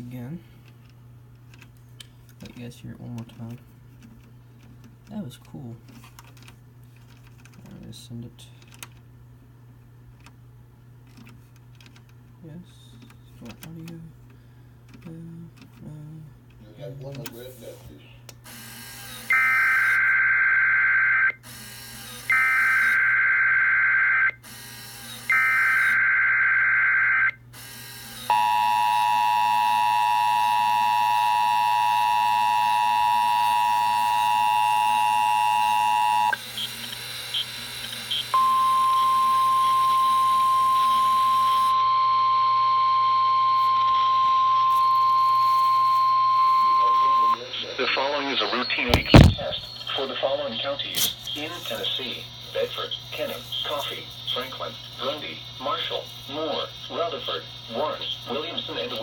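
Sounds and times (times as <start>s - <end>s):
steady warning alarm tone: 18.5s - 47.4s
two-tone attention signal: 41.8s - 47.4s.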